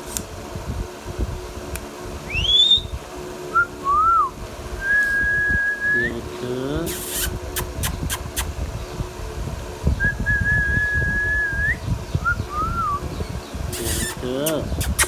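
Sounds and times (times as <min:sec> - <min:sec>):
long whistled note: 0:02.3 - 0:02.9
rising and falling whistle: 0:02.3 - 0:02.9.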